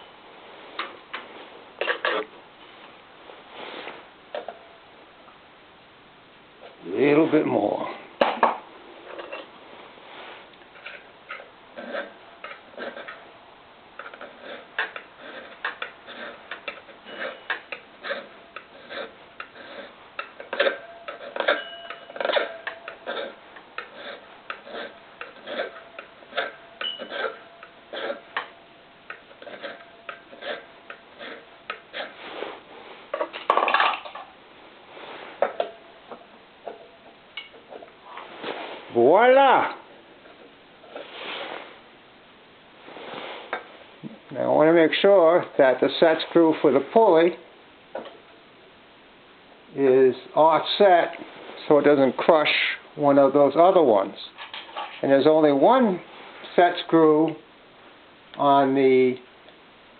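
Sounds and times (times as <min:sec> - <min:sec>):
file scraping metal: 0:10.7 - 0:13.4, 0:14.0 - 0:32.3
metal ringing faintly: 0:20.7 - 0:23.1, 0:25.7 - 0:28.8.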